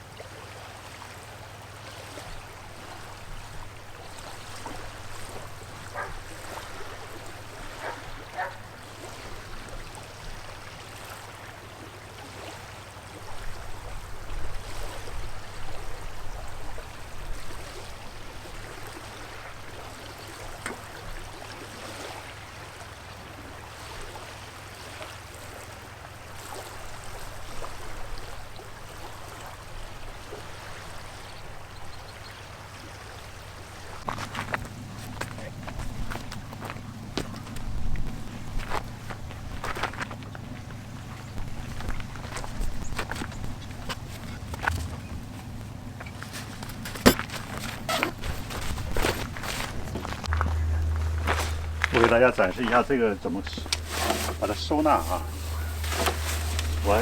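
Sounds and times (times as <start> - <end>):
running water: 0.0 - 57.0
low rumble: 43.4 - 57.0.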